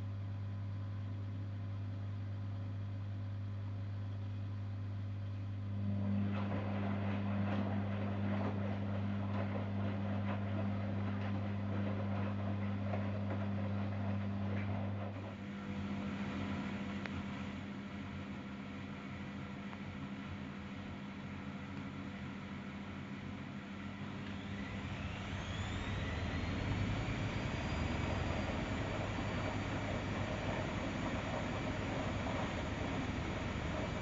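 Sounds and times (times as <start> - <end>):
washer-dryer low hum: 0.0 - 34.0
rough light whir: 24.1 - 34.0.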